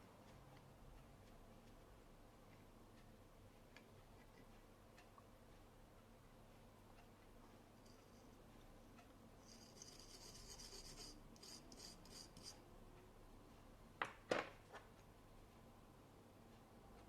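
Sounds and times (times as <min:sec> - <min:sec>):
metal tool scraping circuit board: 0:09.4 - 0:12.6.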